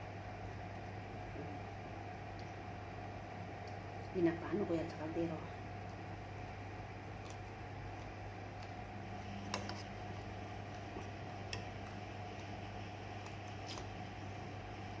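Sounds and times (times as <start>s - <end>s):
clicks and ticks of eating: 5.8s - 14.0s.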